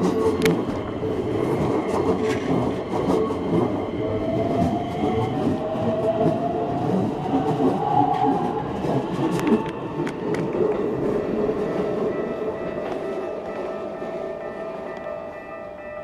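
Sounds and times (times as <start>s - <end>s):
train wheels clacking over rail joints: 0.0s - 3.8s.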